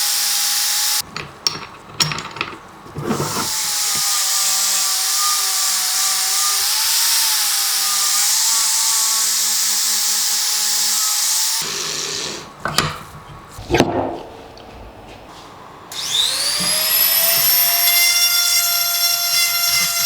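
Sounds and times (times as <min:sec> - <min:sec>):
power tool whining on metal: 0:00.0 - 0:01.0, 0:03.0 - 0:12.4, 0:15.9 - 0:20.0.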